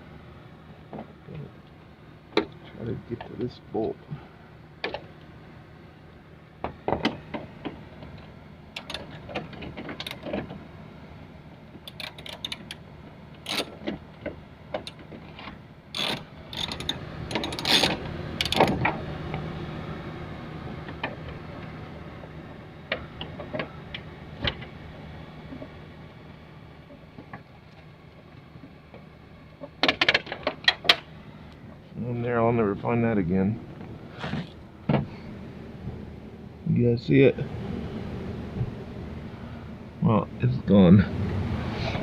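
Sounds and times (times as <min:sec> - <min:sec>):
ratchet wrench clicking: 0:11.9 - 0:12.8, 0:13.4 - 0:13.7, 0:16.0 - 0:18.7.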